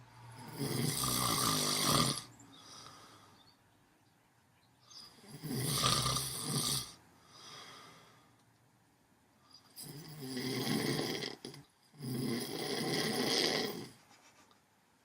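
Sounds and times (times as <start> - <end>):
loud snoring breaths: 0.3 - 3.3, 5.1 - 8.0, 9.8 - 14.0
faint breath: 2.5 - 3.6, 7.1 - 8.4.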